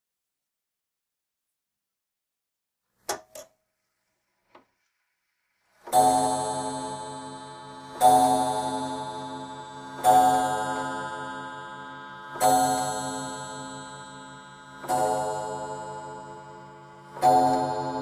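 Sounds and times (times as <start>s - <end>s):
clock ticking: 5.9s - 10.9s, 14.7s - 18.0s
grandfather clock striking: 5.9s - 18.0s.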